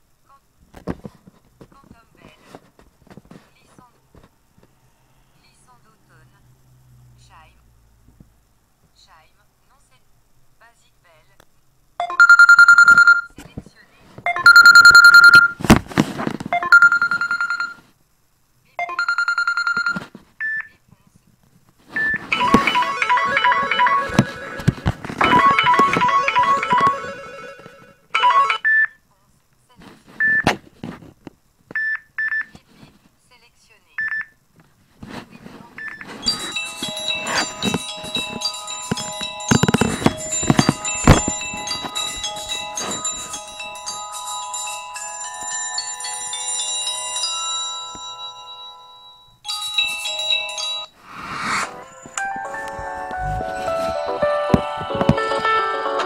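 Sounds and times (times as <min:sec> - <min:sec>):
hissy swell: 0:04.7 - 0:05.8, 0:51.0 - 0:53.2
phone ringtone guitar melody: 0:12.0 - 0:13.3, 0:14.3 - 0:15.6, 0:16.6 - 0:17.8, 0:18.8 - 0:20.0, 0:22.0 - 0:28.7, 0:36.2 - 0:56.0
short chime: 0:36.3 - 0:44.2.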